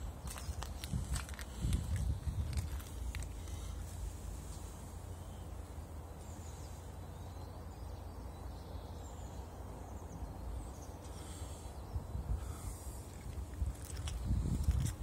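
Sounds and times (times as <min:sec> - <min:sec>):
steady low rumble: 0:11.8 - 0:15.0.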